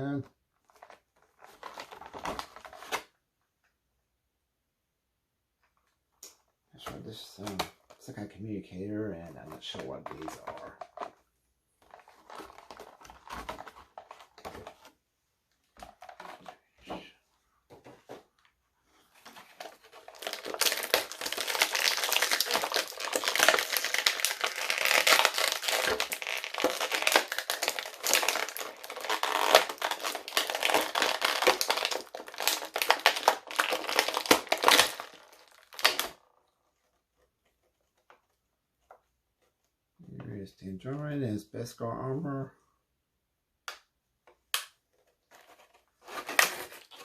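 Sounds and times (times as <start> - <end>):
plastic packaging crinkling: 11.8 - 14.9, 19.1 - 37.0, 45.2 - 47.0.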